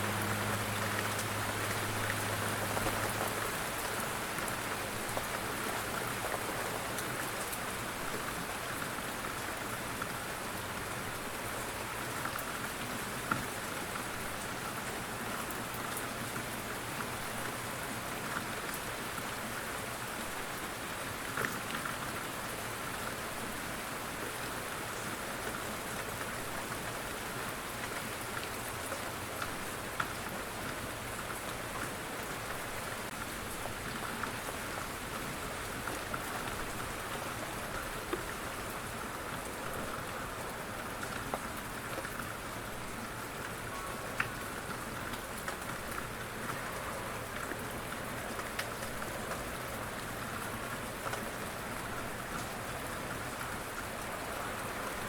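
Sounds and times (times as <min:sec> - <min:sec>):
steady rain hiss: 0:00.0 - 0:55.0.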